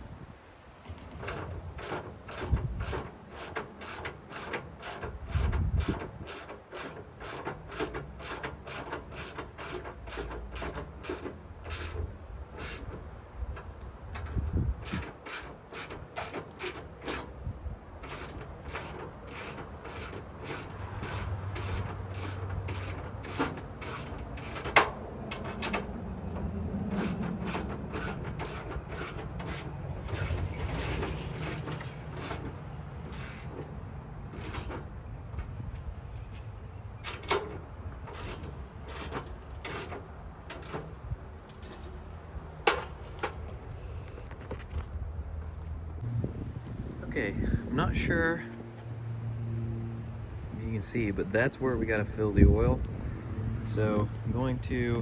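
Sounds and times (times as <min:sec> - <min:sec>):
ratchet wrench clicking: 0:01.1 - 0:33.8, 0:34.4 - 0:35.5, 0:37.1 - 0:41.9.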